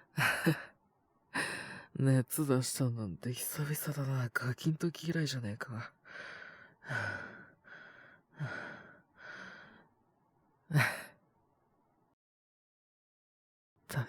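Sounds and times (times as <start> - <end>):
man breathing heavily: 6.0 - 9.8.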